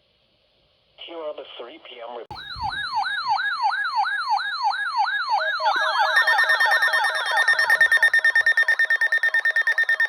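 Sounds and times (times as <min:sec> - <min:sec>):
siren-like alert sweep: 0:02.3 - 0:10.0
rapid pulsed beeping: 0:05.6 - 0:10.0.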